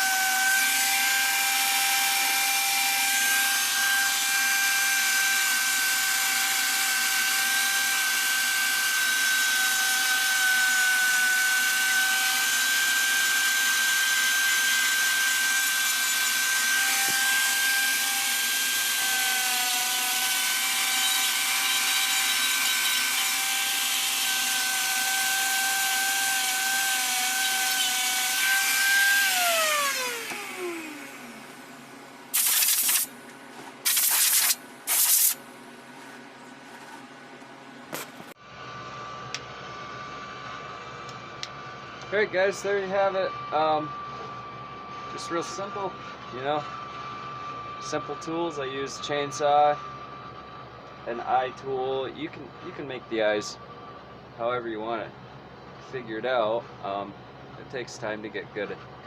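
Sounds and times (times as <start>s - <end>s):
rotary tool grinding wood: 0.0s - 31.6s, 32.3s - 33.1s, 33.8s - 35.4s.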